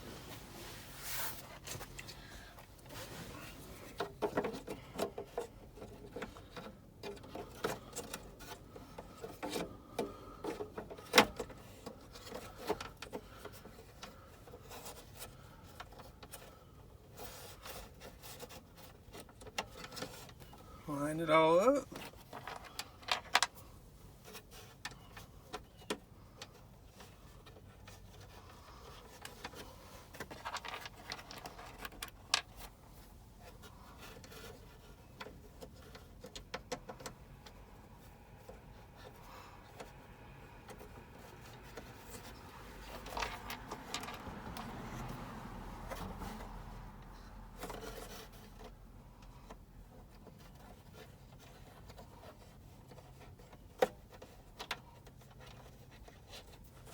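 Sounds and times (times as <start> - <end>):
rubbing and scraping: 0.0 - 56.9.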